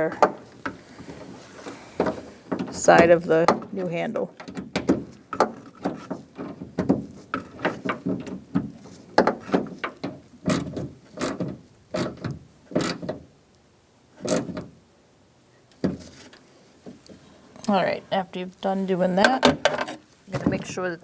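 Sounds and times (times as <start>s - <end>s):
hand ratchet clicking: 10.5s - 11.4s.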